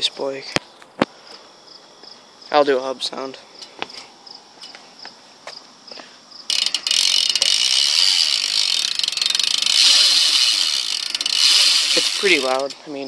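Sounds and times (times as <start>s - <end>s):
crickets chirping: 0.0s - 13.0s
bicycle hub ratcheting buzz: 6.4s - 13.0s.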